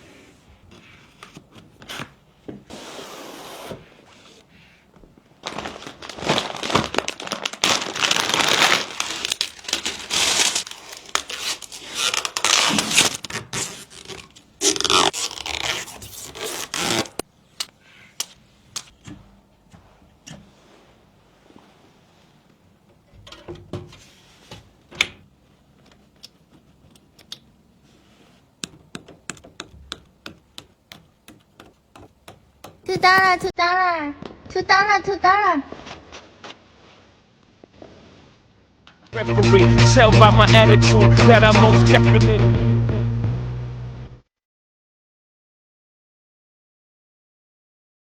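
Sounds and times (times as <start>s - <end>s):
scraping and rustling handling: 0.0s - 17.3s, 27.8s - 33.5s.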